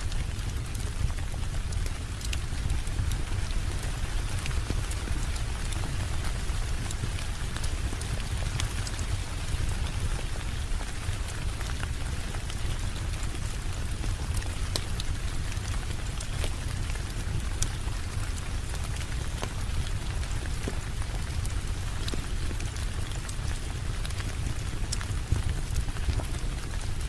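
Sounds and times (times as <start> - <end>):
steady rain: 0.0 - 27.0.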